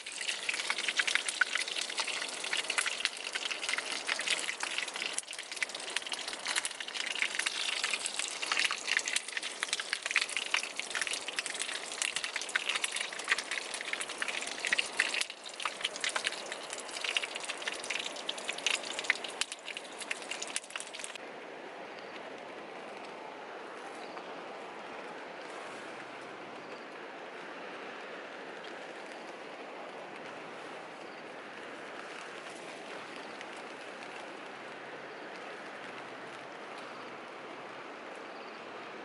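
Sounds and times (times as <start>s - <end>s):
chicken frying in hot oil: 0.0s - 21.2s.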